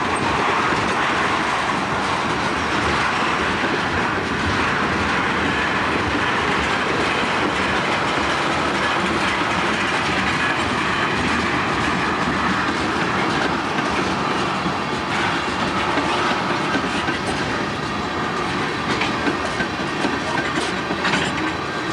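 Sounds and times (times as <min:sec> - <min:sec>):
freight train wheels clattering: 0:00.0 - 0:21.9.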